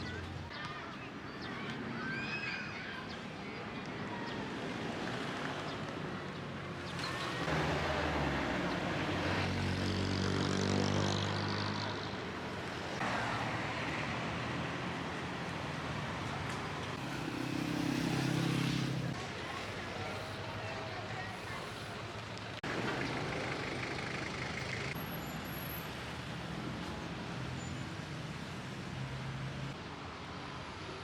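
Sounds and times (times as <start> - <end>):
steady traffic hum: 0.0 - 31.0
vehicle engine passing by: 7.3 - 12.2, 16.9 - 19.2.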